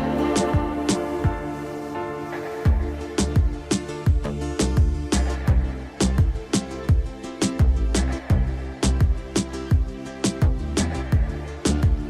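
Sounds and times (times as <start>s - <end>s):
sustained synth chords: 0.0s - 6.4s
kick drum and snare beat: 2.7s - 12.0s.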